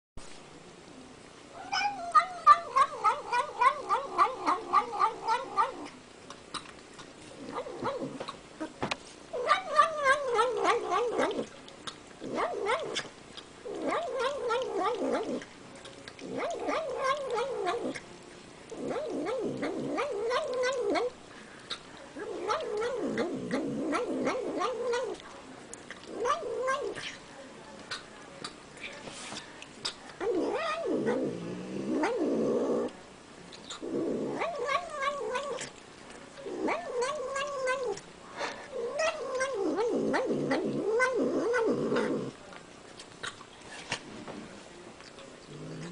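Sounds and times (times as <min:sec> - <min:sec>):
cat yowling while eating: 0:01.6 - 0:05.9, 0:09.4 - 0:11.5, 0:12.2 - 0:13.1, 0:13.7 - 0:15.4, 0:16.2 - 0:18.0, 0:18.8 - 0:21.1, 0:22.2 - 0:25.2, 0:26.1 - 0:27.1, 0:30.2 - 0:31.3, 0:33.8 - 0:35.8, 0:36.4 - 0:38.0, 0:38.7 - 0:42.3.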